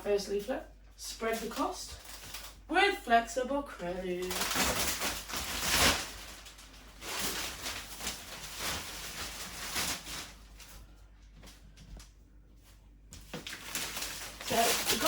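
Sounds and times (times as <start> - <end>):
paper and plastic rustling: 1.1 - 2.6, 4.0 - 12.1, 12.7 - 15.0.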